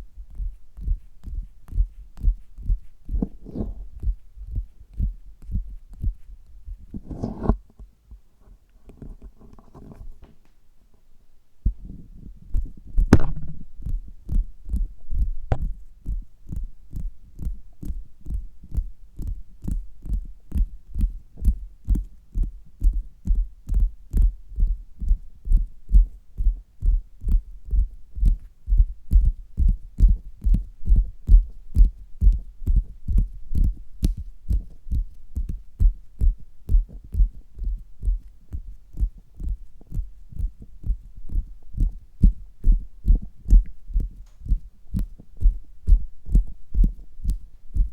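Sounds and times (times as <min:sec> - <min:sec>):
muffled thumps through stethoscope: 0:01.3 - 0:07.8, 0:12.6 - 0:16.2.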